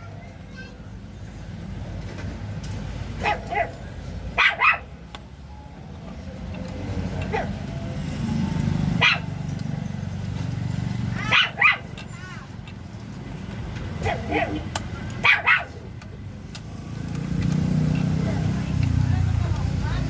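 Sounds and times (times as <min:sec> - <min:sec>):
dog barking: 0:03.2 - 0:04.9, 0:07.3 - 0:07.6, 0:09.0 - 0:09.3, 0:11.2 - 0:11.9, 0:14.0 - 0:15.9.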